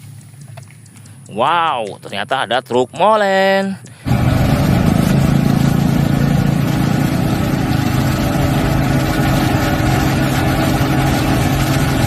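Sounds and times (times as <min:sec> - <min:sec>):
truck engine running: 0:03.8 - 0:12.0.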